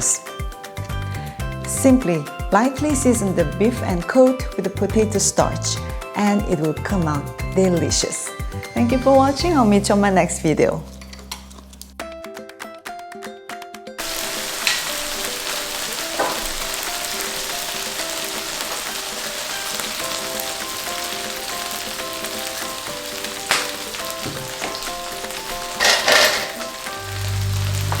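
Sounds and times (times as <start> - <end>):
food sizzling in oil: 14.0 - 28.0
utensil scraping a pan: 25.4 - 26.9.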